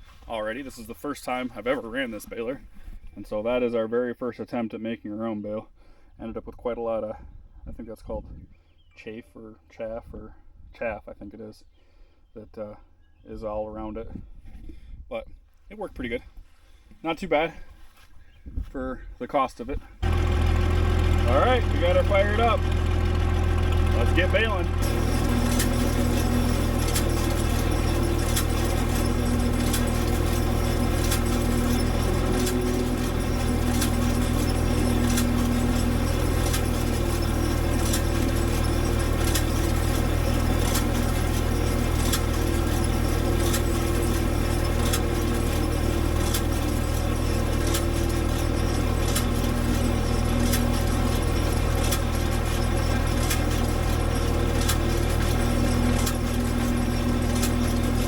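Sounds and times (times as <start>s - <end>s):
baler metallic clicks and rattles: 20.0s - 58.0s
tractor engine running: 20.0s - 58.0s.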